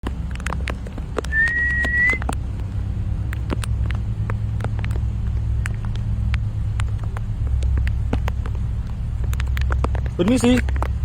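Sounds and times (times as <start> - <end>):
rain drops ticking: 0.0 - 11.0
high whistle-like tone: 1.3 - 2.2
heavy rain: 2.2 - 11.0.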